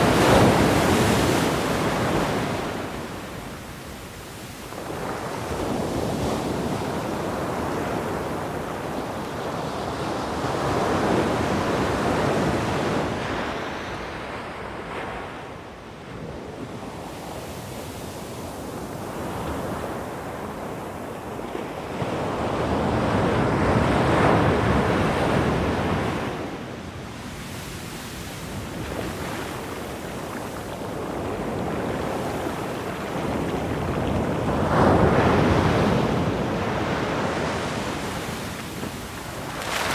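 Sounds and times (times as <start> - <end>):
sea surf washing onto shore: 0.0 - 13.2, 27.7 - 39.9.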